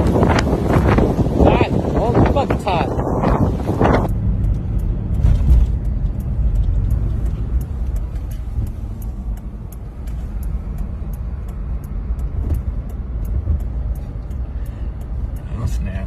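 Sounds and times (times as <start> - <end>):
motor vehicle rumble: 0.0 - 16.0
faint high ticks: 4.0 - 16.0.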